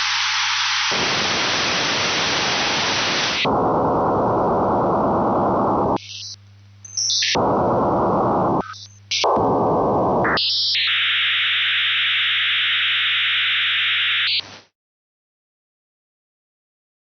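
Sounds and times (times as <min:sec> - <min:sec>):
radio static bursts: 0:00.0 - 0:14.7
low steady hum: 0:03.5 - 0:10.3.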